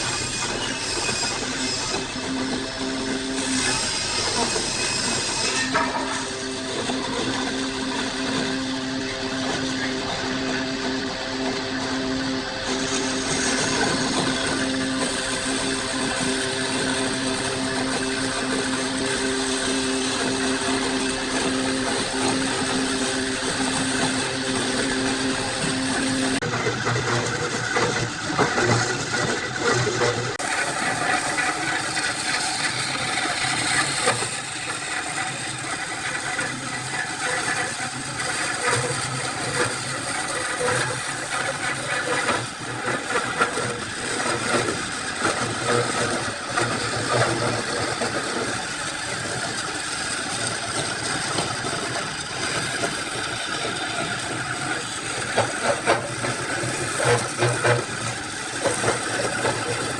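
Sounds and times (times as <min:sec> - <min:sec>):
woodworking power tool running: 0:00.0 - 0:59.9.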